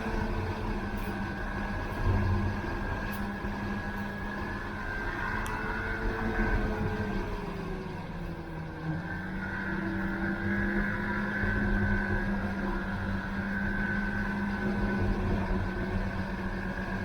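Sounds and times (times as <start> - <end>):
snowmobile engine running: 9.4 - 17.0.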